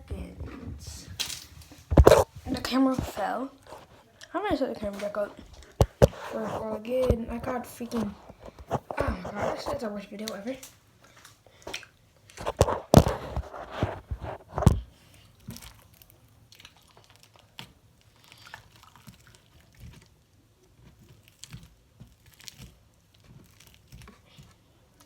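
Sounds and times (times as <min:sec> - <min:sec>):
faint clicks and crackles: 0:00.2 - 0:25.0
camera handling knocks and rustling: 0:01.8 - 0:03.2, 0:05.7 - 0:09.8, 0:12.4 - 0:14.9.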